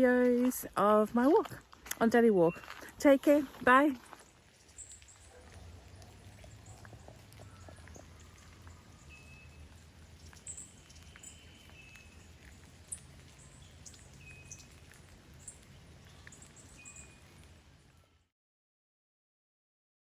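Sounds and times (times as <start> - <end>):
bird chirps: 2.4 - 18.1
whistled bird calls: 6.7 - 12.3, 12.9 - 14.8, 15.4 - 17.3.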